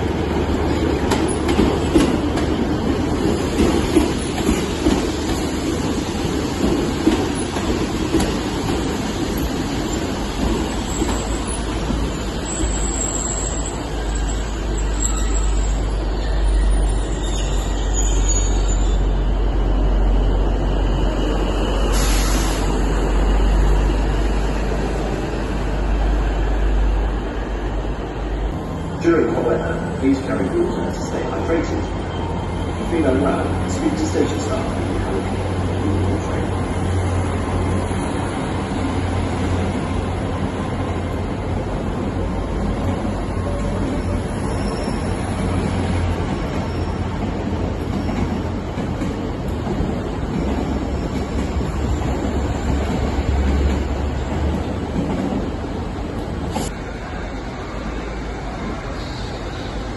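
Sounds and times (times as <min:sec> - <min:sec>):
train rumbling on track: 0:00.0 - 0:59.9
faint high wheel squeal: 0:12.4 - 0:24.5, 0:43.4 - 0:45.6.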